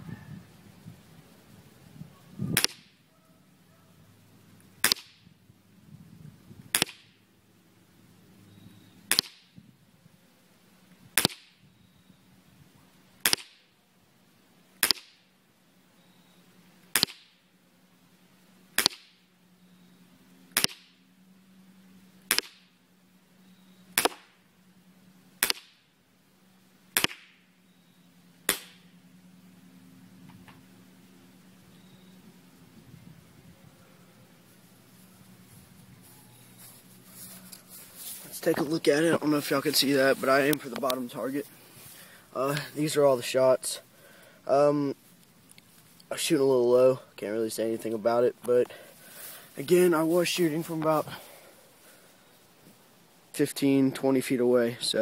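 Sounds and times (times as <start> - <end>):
airsoft pistol shots: 2.5 - 2.9, 4.8 - 5.2, 6.7 - 7.1, 9.1 - 9.4, 13.2 - 13.6, 14.8 - 15.2, 16.9 - 17.3, 18.8 - 19.2, 20.6 - 20.9, 22.3 - 22.6, 24.0 - 24.3, 25.4 - 25.8, 27.0 - 27.4, 28.5 - 28.8.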